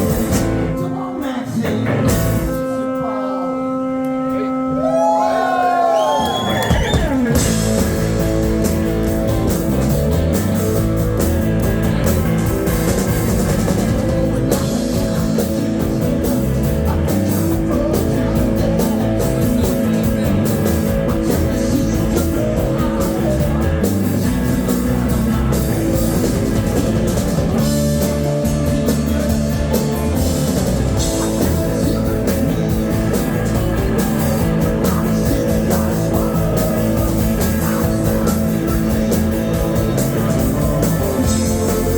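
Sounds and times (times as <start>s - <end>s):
drum kit: 0.0s - 3.2s, 6.1s - 41.9s
electric guitar: 0.0s - 41.9s.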